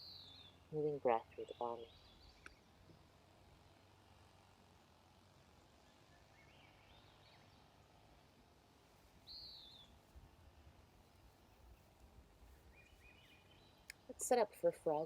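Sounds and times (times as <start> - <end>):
faint bird chirping: 5.8 - 7.8, 9.2 - 10.0, 11.0 - 14.1.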